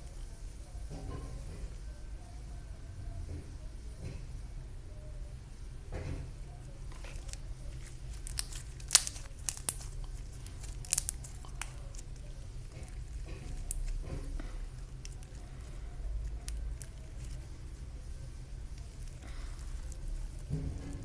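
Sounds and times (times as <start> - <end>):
faint crackling: 6.0 - 21.0.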